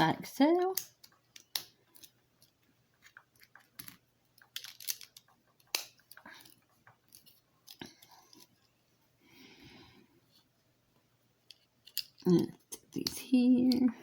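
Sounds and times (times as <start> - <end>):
plastic bricks clicking: 0.7 - 8.5.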